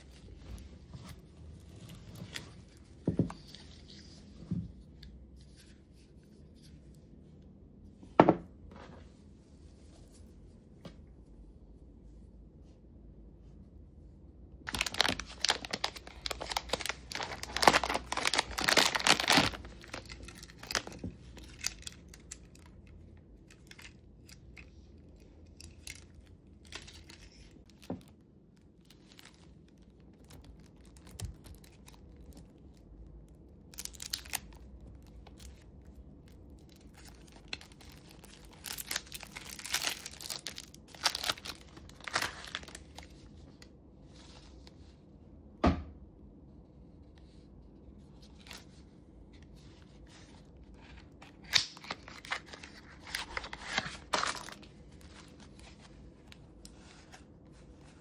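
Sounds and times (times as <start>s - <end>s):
packaging tearing and crumpling: 14.7s - 43.4s, 50.5s - 56.6s.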